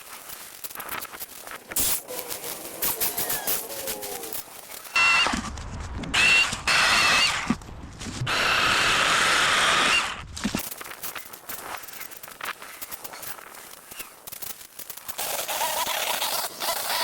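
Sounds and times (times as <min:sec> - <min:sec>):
power garden tool motor whining: 0:01.4 - 0:05.4.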